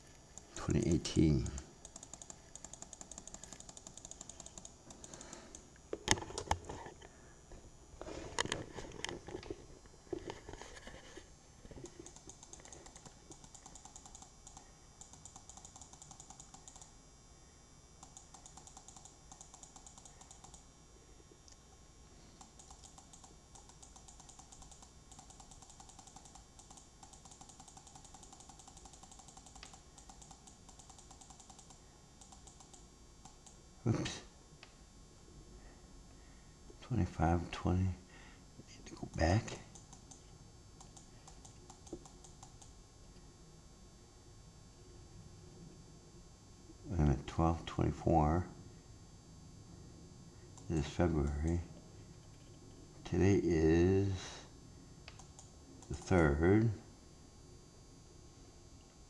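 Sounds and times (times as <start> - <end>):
keyboard keys clicking: 1.8 - 5.6, 12.0 - 16.9.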